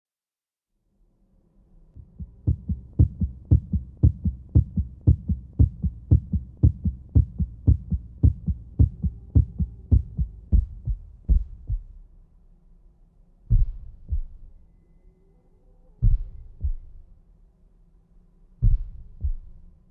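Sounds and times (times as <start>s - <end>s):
faint steady hum: 1.0s - 19.9s
heartbeat double thump: 2.0s - 12.0s, 13.5s - 14.5s, 16.0s - 17.0s, 18.6s - 19.6s.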